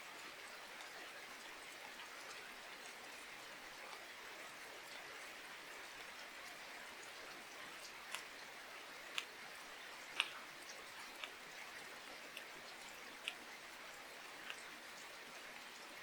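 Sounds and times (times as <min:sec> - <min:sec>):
light rain hiss: 0:00.0 - 0:16.0
raindrops ticking on surface: 0:00.0 - 0:16.0.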